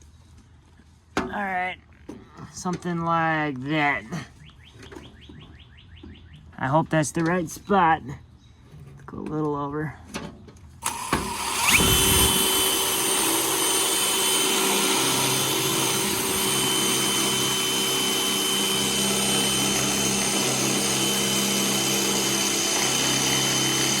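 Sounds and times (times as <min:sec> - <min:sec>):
cordless drill whining: 0:10.8 - 0:24.0.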